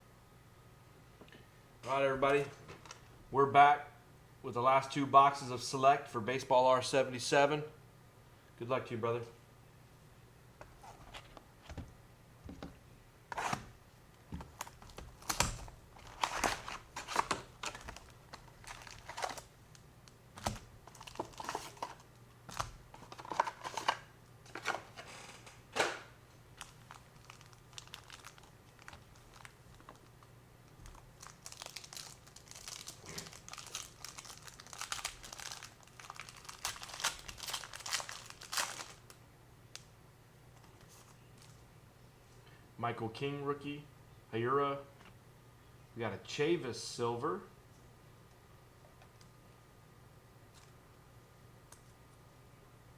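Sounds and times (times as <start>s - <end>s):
plastic wrapping torn and crinkled: 14.5s - 24.0s, 26.5s - 39.2s.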